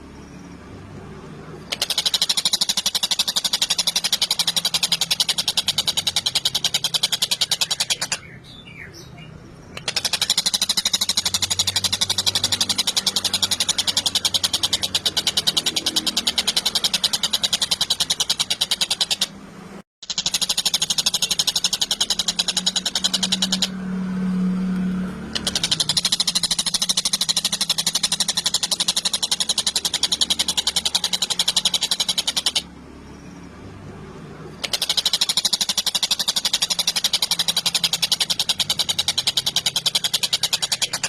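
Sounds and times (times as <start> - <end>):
kingfisher rattling chatter: 1.7 - 8.3, 9.8 - 19.4, 20.0 - 23.8, 25.3 - 32.7, 34.5 - 41.0.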